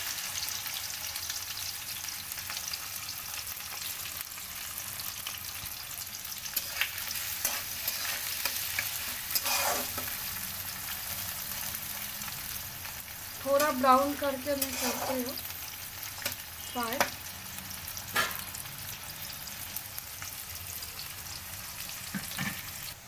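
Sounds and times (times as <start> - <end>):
onions sizzling in hot oil: 0.0 - 23.0
spatula scraping pan: 6.5 - 10.4, 13.5 - 15.4.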